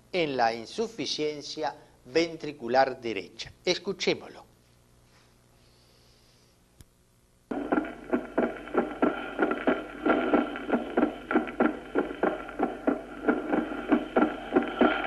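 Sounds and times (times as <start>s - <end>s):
heart beating: 7.5s - 15.0s
steady hiss: 7.5s - 15.0s.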